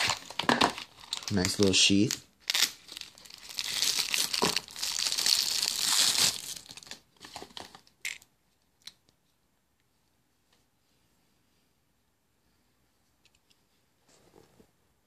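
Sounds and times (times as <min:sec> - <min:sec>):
packaging crinkling and rustling: 0:00.0 - 0:07.9.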